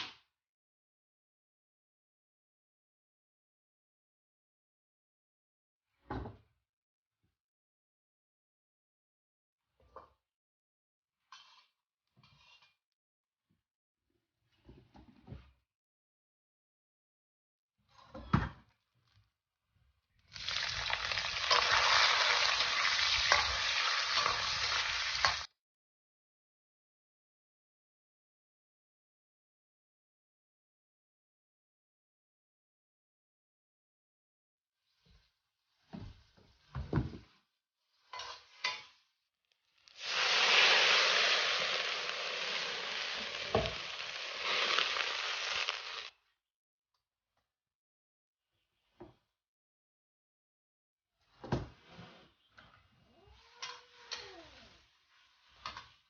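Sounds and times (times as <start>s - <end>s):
sizzling hiss with pops: 20.4s - 25.5s, 39.9s - 46.1s.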